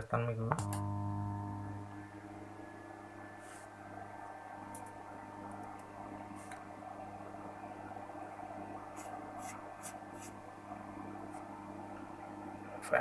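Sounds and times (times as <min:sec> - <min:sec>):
subwoofer mains hum: 0:00.0 - 0:13.0.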